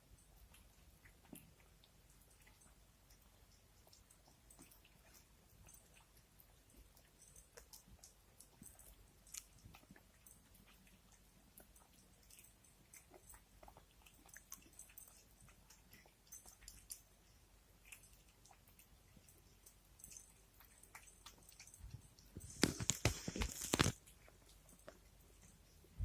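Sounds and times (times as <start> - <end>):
cats chewing and crunching: 0.0 - 26.0.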